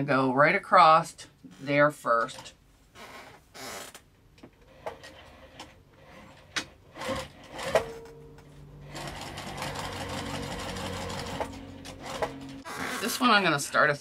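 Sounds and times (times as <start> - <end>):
sewing machine stitching: 4.7 - 7.9, 8.8 - 13.2.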